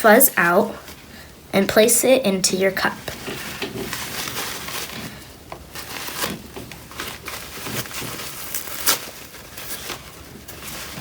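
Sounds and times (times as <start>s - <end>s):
diaper rustling and crinkling: 2.8s - 11.0s.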